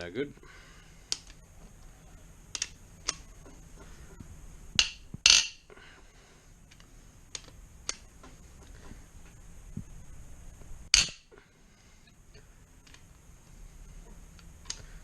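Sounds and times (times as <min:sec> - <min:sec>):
metallic clanks: 0:04.8 - 0:06.1, 0:10.9 - 0:11.4.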